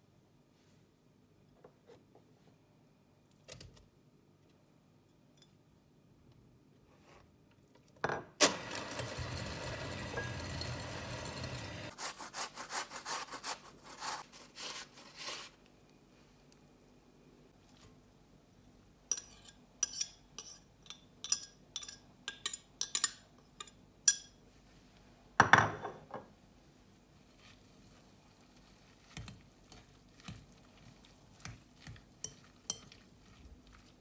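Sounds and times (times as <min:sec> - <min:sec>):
rasping sawing scrape: 0:11.8 - 0:15.5.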